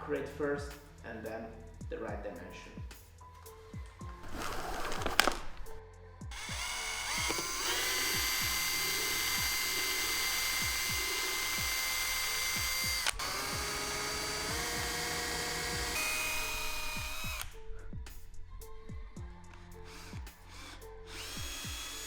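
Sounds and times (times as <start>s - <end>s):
background music with beat: 0.0s - 22.0s
electric drill whining: 4.1s - 22.0s
click: 6.4s - 8.2s, 13.0s - 13.2s.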